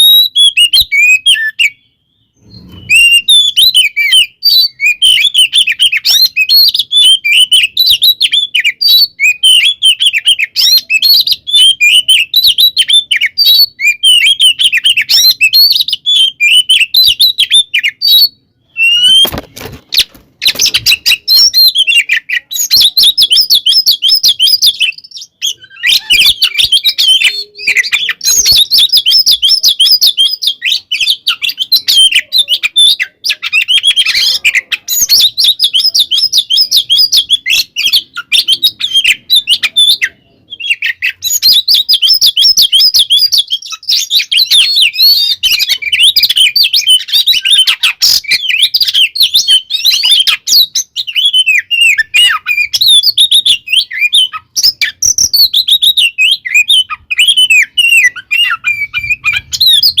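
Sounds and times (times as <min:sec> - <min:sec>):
bird singing chirps and whistles: 0:00.0 - 1:00.0.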